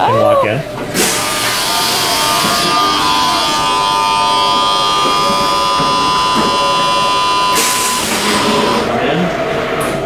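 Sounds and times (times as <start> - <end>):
electric machinery whine: 0.0 - 10.0
air hissing: 0.9 - 8.9.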